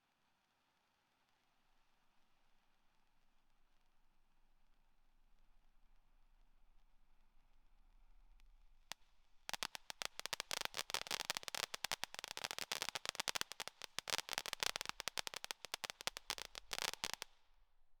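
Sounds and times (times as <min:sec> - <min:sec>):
firework crackling pops: 0:08.9 - 0:17.6.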